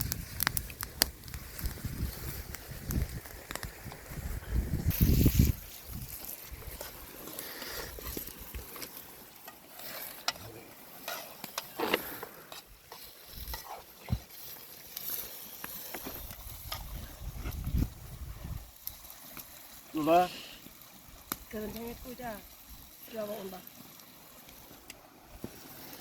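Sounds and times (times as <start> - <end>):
food being handled and stirred: 0.0 - 20.2
light hiss: 0.0 - 26.0.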